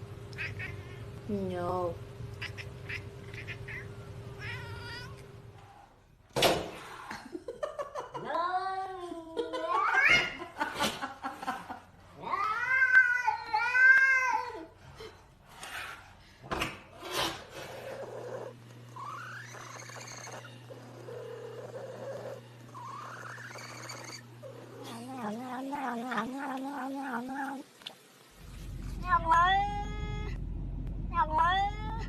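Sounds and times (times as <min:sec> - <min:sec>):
steady low hum: 0:00.0 - 0:06.0, 0:28.2 - 0:32.0
cat meowing: 0:02.4 - 0:05.2, 0:29.0 - 0:30.4, 0:31.2 - 0:32.0.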